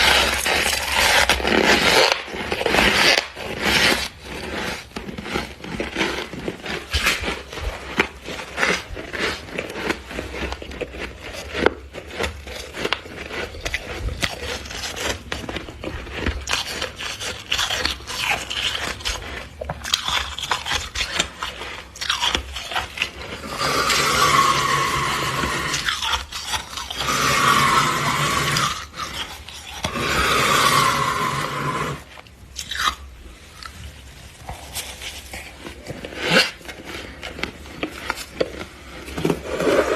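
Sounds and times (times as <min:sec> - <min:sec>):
frost being bitten and chewed: 0:00.0 - 0:39.4
rasping crunches: 0:00.0 - 0:39.9.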